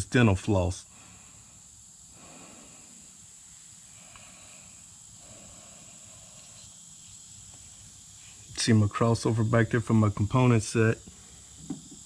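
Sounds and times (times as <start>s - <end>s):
constant high-pitched tone: 0.0s - 12.0s
faint background hiss: 0.0s - 12.0s.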